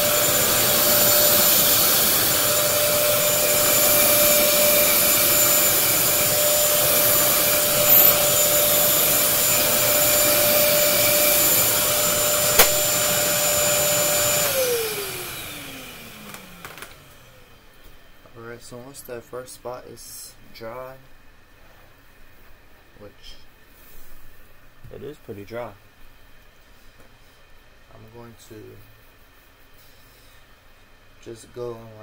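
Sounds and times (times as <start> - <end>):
carpet cleaner motor whining: 0.0 - 17.7
sharp click: 12.5 - 12.9.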